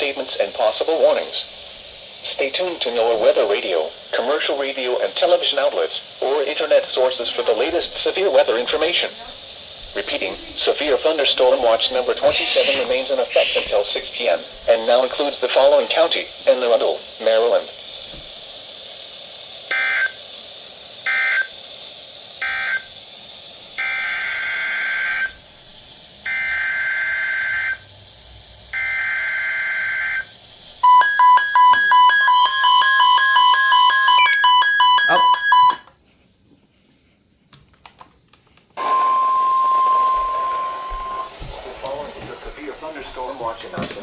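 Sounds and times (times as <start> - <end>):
steady warning tone: 0.0 - 18.1, 19.6 - 20.3, 21.0 - 21.7, 22.3 - 23.0, 23.7 - 25.6, 26.2 - 36.0, 38.8 - 44.0
two-tone digital data screech: 12.2 - 13.8, 30.8 - 35.8
rapidly pulsing electronic beeps: 30.9 - 35.8.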